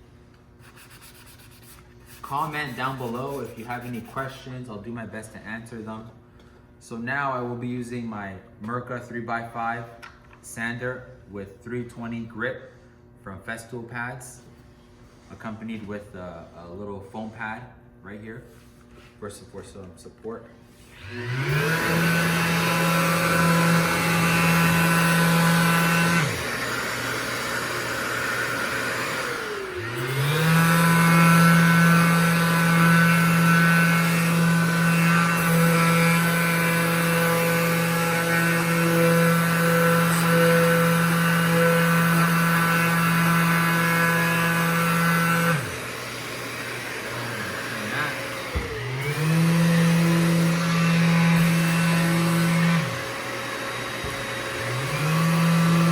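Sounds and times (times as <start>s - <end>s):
orbital sander motor whine: 20.9s - 55.9s.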